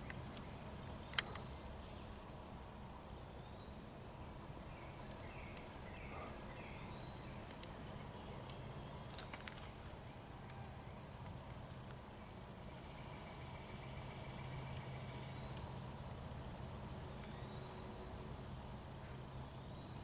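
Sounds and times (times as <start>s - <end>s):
insect buzzing trill: 0.0s - 1.4s, 4.2s - 8.6s, 12.2s - 18.3s.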